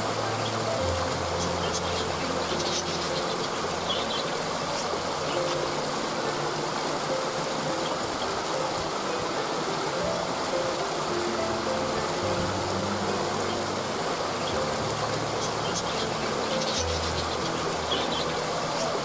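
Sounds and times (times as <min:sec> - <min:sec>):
waterfall rushing: 0:00.0 - 0:19.0
bird chirps: 0:01.3 - 0:05.7, 0:15.2 - 0:18.9.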